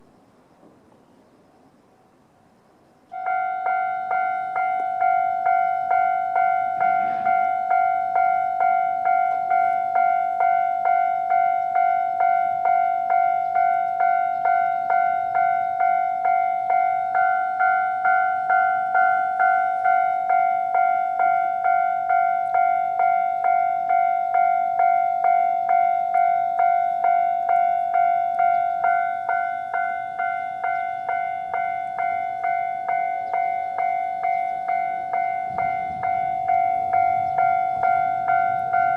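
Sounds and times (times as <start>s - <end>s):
level-crossing electronic bell: 3.2s - 38.9s.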